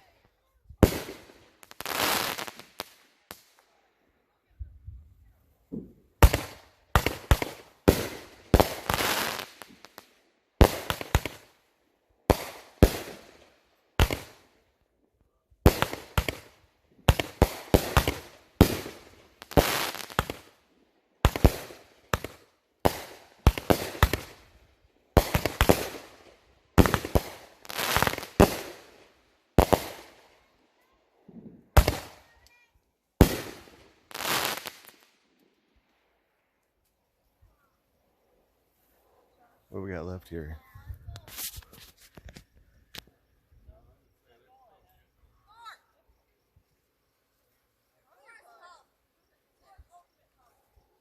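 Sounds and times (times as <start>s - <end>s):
fireworks bangs with crackle: 0.8s - 3.6s, 5.7s - 11.6s, 12.3s - 14.5s, 15.6s - 20.6s, 21.2s - 30.3s, 31.3s - 35.1s.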